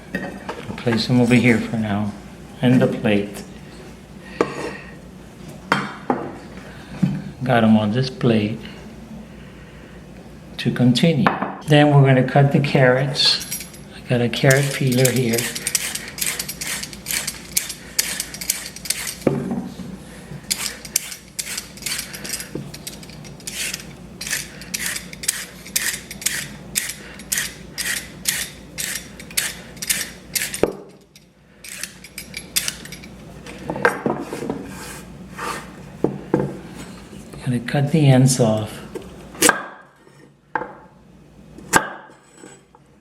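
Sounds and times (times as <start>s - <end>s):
peeler scraping carrot: 14.5s - 19.3s, 20.5s - 30.6s.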